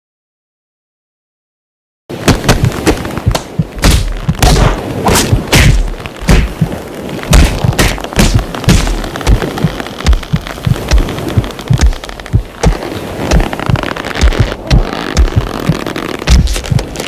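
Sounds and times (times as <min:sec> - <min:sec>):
heavy booms and thumps: 0:02.2 - 0:17.0
sharp cracks and smacks: 0:02.2 - 0:17.0.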